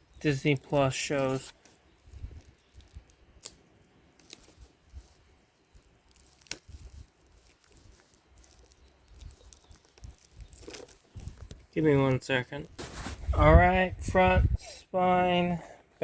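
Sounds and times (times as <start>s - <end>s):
packaging crinkling and tearing: 0.2s - 11.7s.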